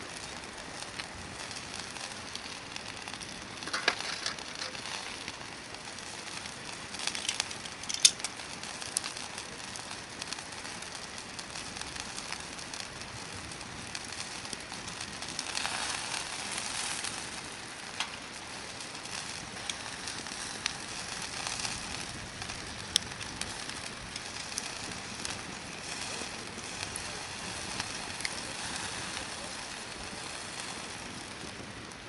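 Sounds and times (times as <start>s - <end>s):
campfire crackling: 0.0s - 32.0s
fire hissing: 0.0s - 32.0s
wood popping: 2.2s - 5.4s, 6.9s - 8.4s.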